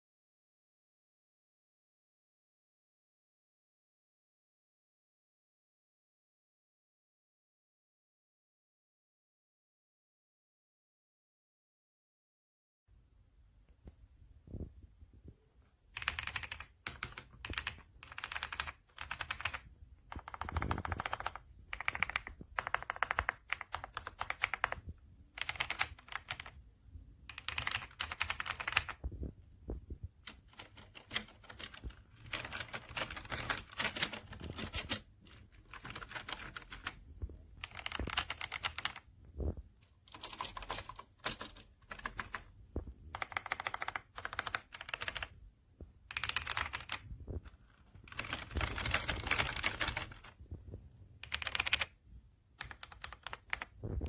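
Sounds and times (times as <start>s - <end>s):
mechanical keyboard typing: 15.9s - 26.6s, 27.3s - 29.1s, 30.2s - 37.0s, 37.6s - 39.1s, 40.1s - 42.5s, 43.1s - 45.4s, 46.1s - 50.4s, 51.2s - 52.0s, 52.6s - 54.0s.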